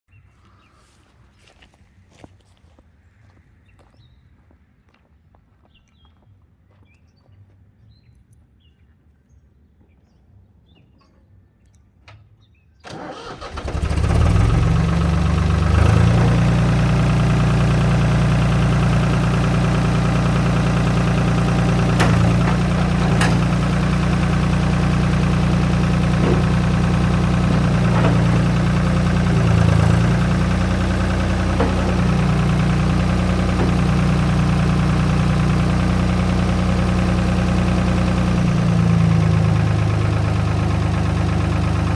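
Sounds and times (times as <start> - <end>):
tractor diesel engine starting and idling: 12.8 - 41.9.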